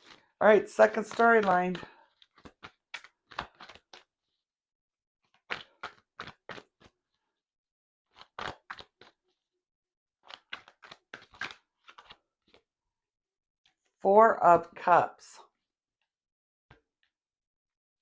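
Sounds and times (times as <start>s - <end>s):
cards being shuffled: 0.0s - 4.1s, 5.3s - 7.1s, 8.1s - 9.2s, 10.2s - 12.6s.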